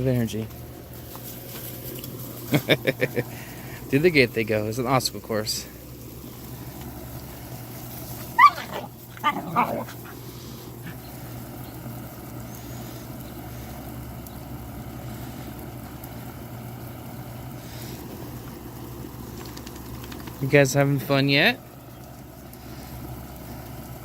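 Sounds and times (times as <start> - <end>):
steady low hum: 0.0 - 24.0
puppies barking: 8.1 - 11.2.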